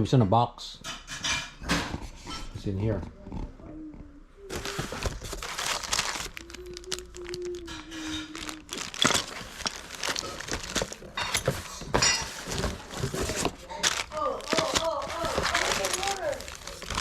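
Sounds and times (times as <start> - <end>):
packaging rustling and crinkling: 4.4 - 17.0.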